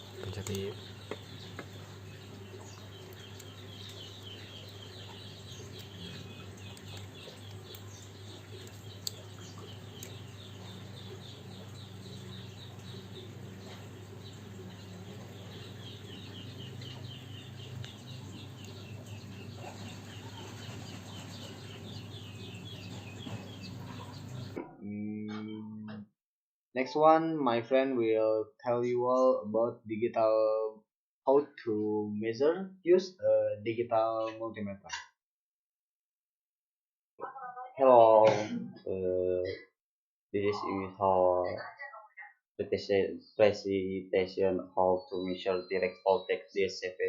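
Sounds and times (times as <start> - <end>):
small birds chirping: 0.0 - 26.0, 40.4 - 42.2.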